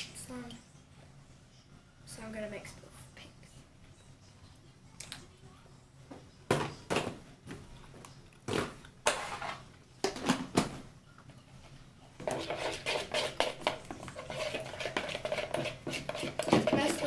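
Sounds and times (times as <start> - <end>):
scraping and stirring in bowl: 9.1 - 9.7, 12.2 - 17.0
utensil clattering against bowl: 12.2 - 17.0.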